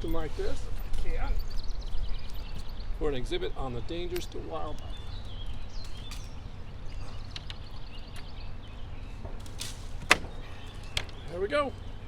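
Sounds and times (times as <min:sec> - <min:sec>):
branch rustling: 0:09.1 - 0:11.5
sharp snap: 0:09.4 - 0:10.4.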